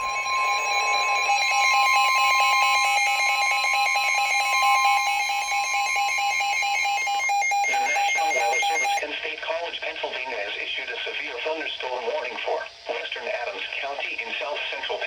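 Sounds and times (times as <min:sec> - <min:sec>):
fast pulsing beep: 0:00.0 - 0:09.0
steady high alarm tone: 0:00.0 - 0:09.0.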